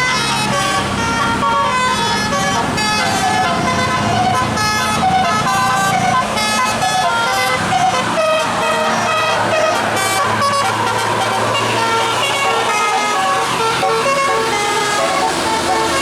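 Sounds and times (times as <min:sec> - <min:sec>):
bus engine running: 0:00.0 - 0:16.0
bus musical air horn tune: 0:00.0 - 0:16.0.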